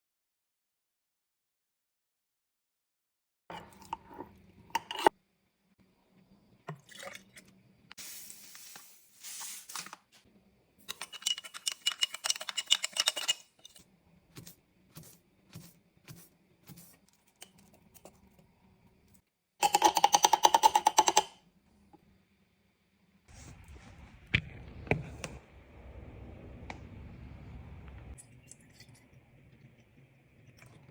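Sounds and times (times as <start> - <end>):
utensils and containers knocking: 10.9 - 13.8, 19.6 - 21.4.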